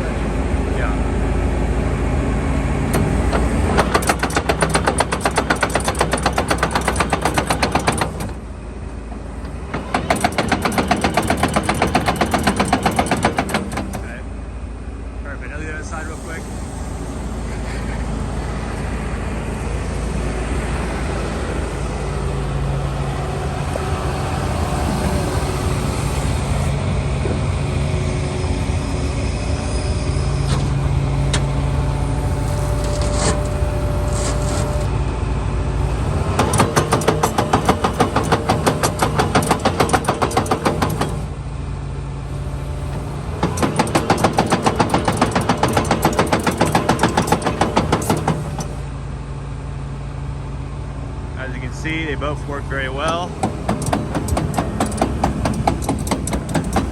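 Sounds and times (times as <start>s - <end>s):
excavator diesel engine running: 0.0s - 56.9s
steel tracks clattering: 2.9s - 14.4s, 15.4s - 20.1s, 20.8s - 27.4s, 35.8s - 41.4s, 42.3s - 48.9s, 51.5s - 56.9s
thin hydraulic whine: 2.9s - 41.4s, 51.4s - 56.9s.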